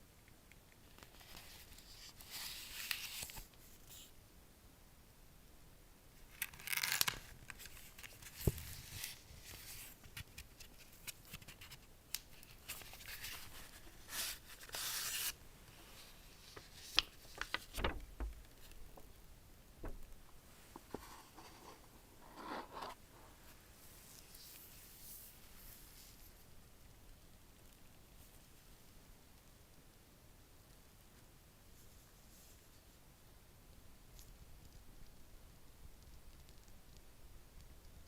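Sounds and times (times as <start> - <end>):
packaging rustling and tearing: 6.3 - 15.4.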